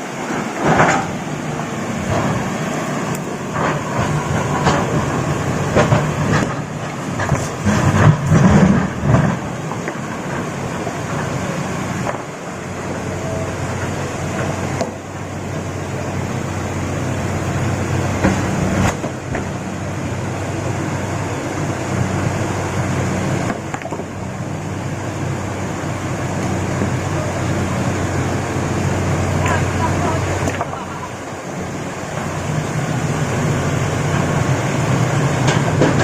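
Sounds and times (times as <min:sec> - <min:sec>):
excavator diesel engine running: 0:00.0 - 0:36.0.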